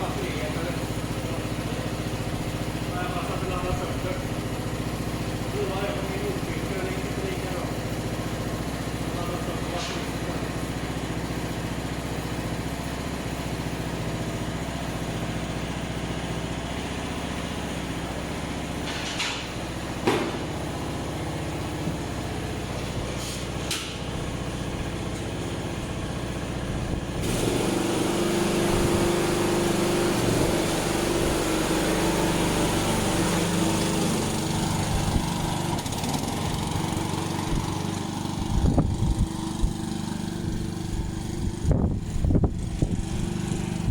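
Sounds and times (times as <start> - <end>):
lawn mower engine running: 0.0 - 43.9
short knocks: 18.9 - 20.6.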